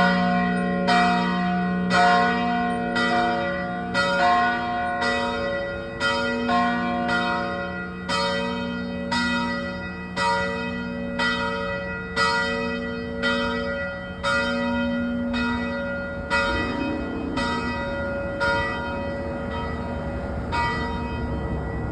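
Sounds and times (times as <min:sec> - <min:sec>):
church bells ringing: 0:00.0 - 0:21.9.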